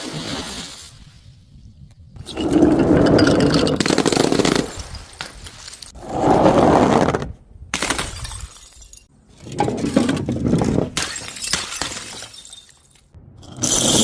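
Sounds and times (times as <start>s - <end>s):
glass bottles shattering: 7.8s - 9.1s, 9.8s - 14.0s
tinkle of falling glass shards: 8.2s - 9.1s, 11.1s - 13.1s.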